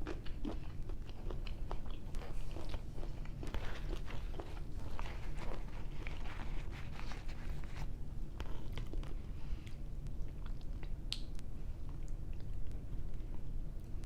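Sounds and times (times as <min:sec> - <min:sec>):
person chewing: 0:00.0 - 0:13.9
wet mouth clicks and smacks: 0:10.4 - 0:11.4.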